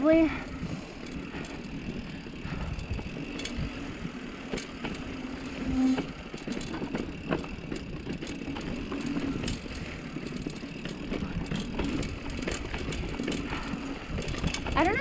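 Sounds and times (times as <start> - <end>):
bike tyres on dirt trail: 0.0 - 15.0
bike knocking and rattling over rocks: 6.4 - 15.0.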